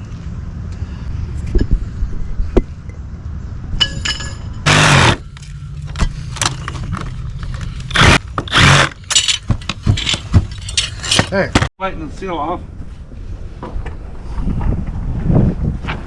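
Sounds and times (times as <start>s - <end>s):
tool rasping on wood: 4.7s - 5.2s.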